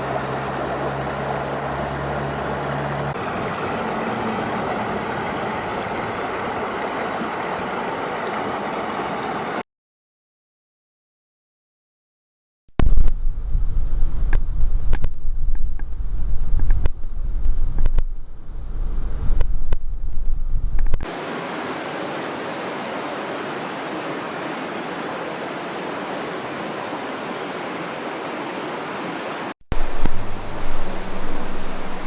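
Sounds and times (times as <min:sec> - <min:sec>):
river water rushing: 0:00.0 - 0:09.6, 0:21.0 - 0:32.0
wind buffeting microphone: 0:00.0 - 0:09.6, 0:12.8 - 0:21.0, 0:29.8 - 0:32.0.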